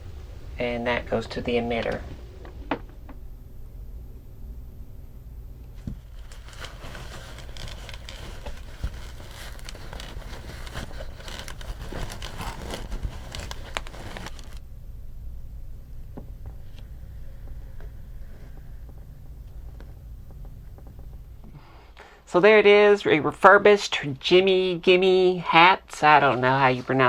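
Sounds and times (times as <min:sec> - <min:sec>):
low steady hum: 0:00.0 - 0:27.0
crinkling and rustling handling: 0:05.6 - 0:14.6.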